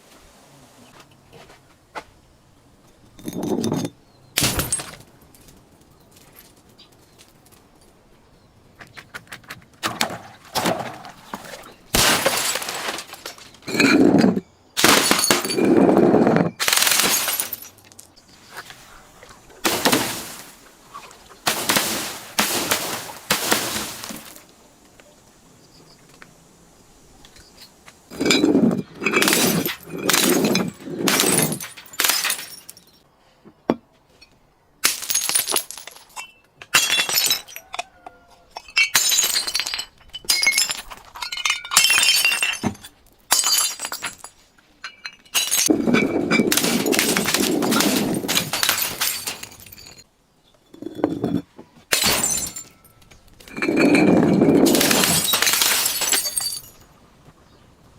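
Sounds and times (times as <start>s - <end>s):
glass shards clinking: 3.2s - 5.0s, 12.0s - 15.8s, 16.5s - 18.3s, 19.7s - 24.4s, 28.1s - 33.0s, 34.8s - 37.8s, 38.6s - 50.1s, 50.7s - 56.9s
glass bottles crushing and shattering: 3.2s - 5.4s, 9.8s - 18.7s, 19.6s - 24.5s, 28.1s - 33.0s, 34.8s - 37.8s, 38.5s - 50.1s, 50.7s - 57.0s.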